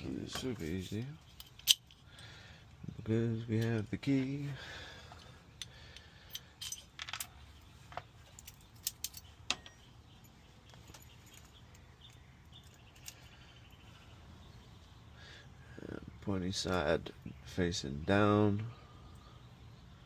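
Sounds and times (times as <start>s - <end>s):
metal lock parts clicking: 0.3s - 2.1s, 5.6s - 7.4s, 8.3s - 9.9s.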